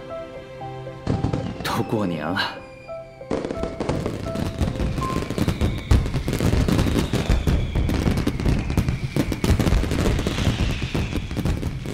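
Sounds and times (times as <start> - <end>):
firecrackers cracking: 1.1 - 2.0, 3.3 - 11.9
firework whistles falling in pitch: 1.2 - 11.9.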